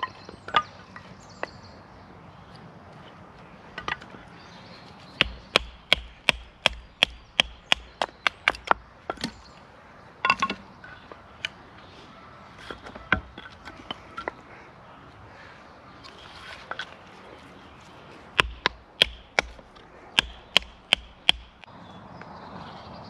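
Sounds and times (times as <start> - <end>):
chopping strikes on wood: 5.2 - 9.4, 18.4 - 21.7.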